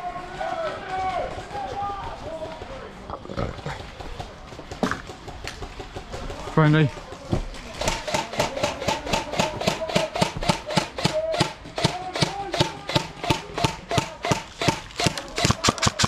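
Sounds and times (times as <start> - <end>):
airsoft guns firing: 7.7 - 16.0.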